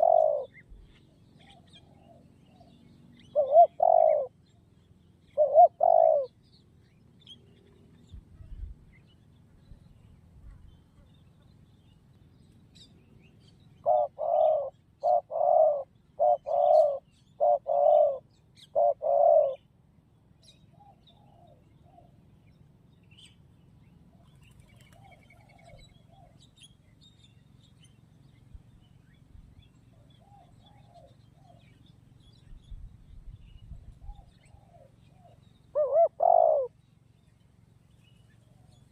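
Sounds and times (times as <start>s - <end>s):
dove cooing: 0.0s - 4.6s, 5.2s - 6.5s, 13.6s - 19.7s, 20.7s - 22.2s, 24.1s - 26.5s, 29.9s - 31.8s, 33.8s - 36.8s.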